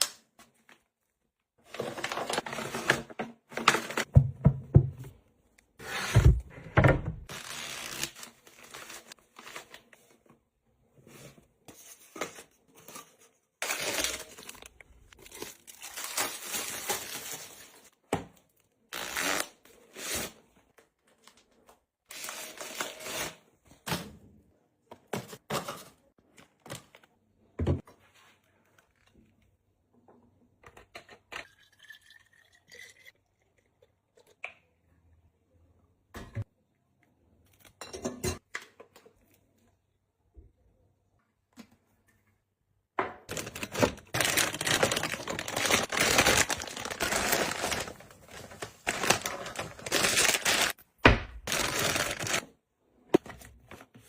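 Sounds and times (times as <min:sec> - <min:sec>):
packaging tearing and crinkling: 0:43.3 - 0:50.8, 0:51.5 - 0:52.4.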